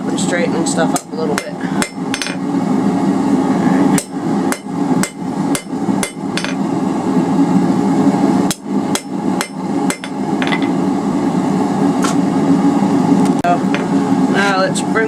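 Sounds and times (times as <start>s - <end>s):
hammer striking on anvil: 1.4s - 2.4s, 4.0s - 6.6s, 8.5s - 10.7s.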